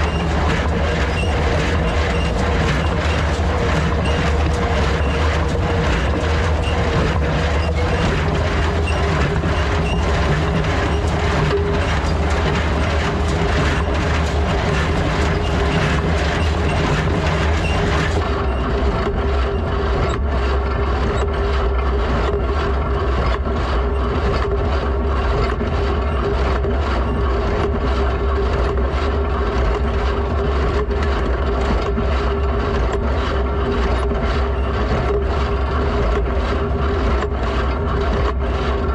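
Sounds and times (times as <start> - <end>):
baler mechanism knocking: 0.0 - 20.3
tractor engine running: 0.0 - 38.9.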